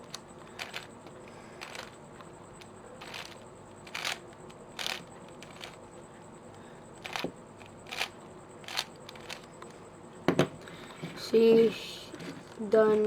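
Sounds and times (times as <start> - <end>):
plastic puzzle cube clacking: 0.0 - 0.9, 1.6 - 1.9, 3.0 - 5.8, 7.0 - 9.5.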